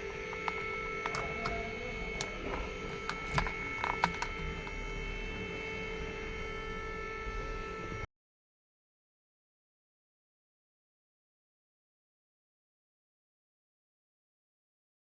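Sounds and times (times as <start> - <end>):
sharp clicks and taps: 0.0 - 4.8
electrical hum: 0.0 - 8.1.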